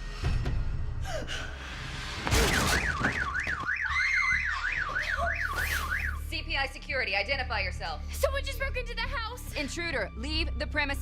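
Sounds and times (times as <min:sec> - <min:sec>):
burglar alarm siren warbling: 0:02.4 - 0:06.3.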